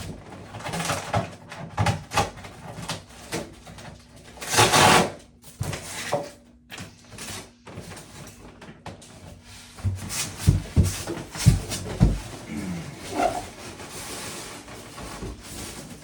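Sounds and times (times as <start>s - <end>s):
packaging rustling and scraping: 9.2s - 16.0s.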